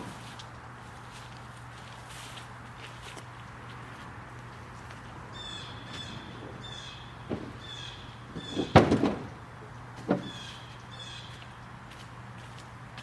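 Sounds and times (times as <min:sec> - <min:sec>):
sharp knocks and clunks: 0:05.8 - 0:10.6.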